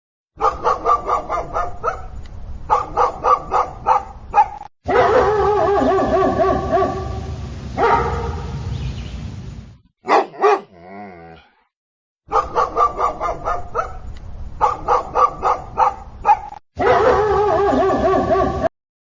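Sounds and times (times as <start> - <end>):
dog yapping barks: 0.4 - 7.1, 7.8 - 8.5, 10.0 - 10.8, 12.3 - 18.7.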